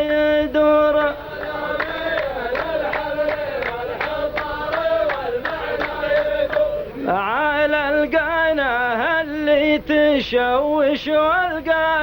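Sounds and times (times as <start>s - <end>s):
chorus of voices chanting: 0.0s - 9.3s
sharp hand claps: 1.3s - 6.8s.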